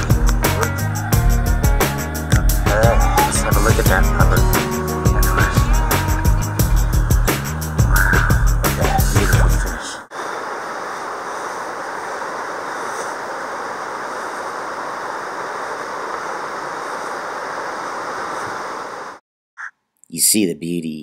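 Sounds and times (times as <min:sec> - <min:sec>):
stream water rushing: 0:10.1 - 0:19.2.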